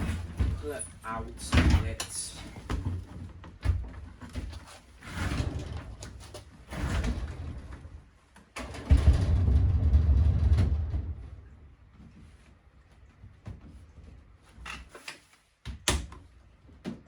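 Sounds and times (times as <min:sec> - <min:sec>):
washing machine scraping across floor: 0:04.6 - 0:08.0, 0:08.9 - 0:11.7.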